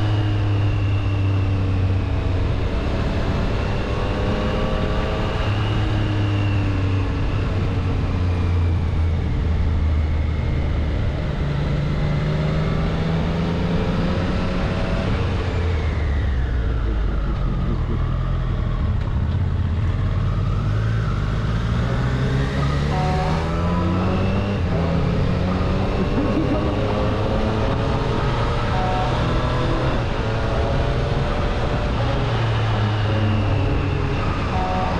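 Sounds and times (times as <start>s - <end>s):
motorcycle engine running: 22.6s - 31.7s.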